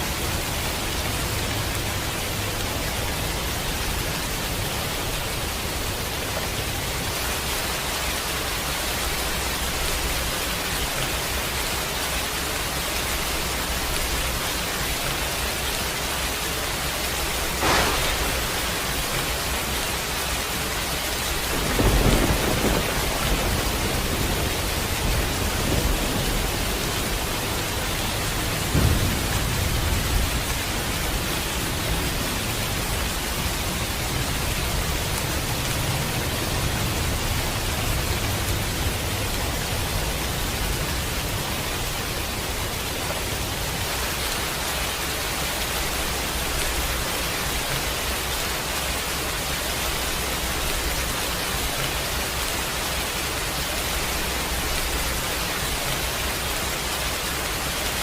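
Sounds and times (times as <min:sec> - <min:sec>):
steady rain falling: 0:00.0 - 0:58.0
thunder: 0:17.4 - 0:20.2, 0:21.2 - 0:42.9.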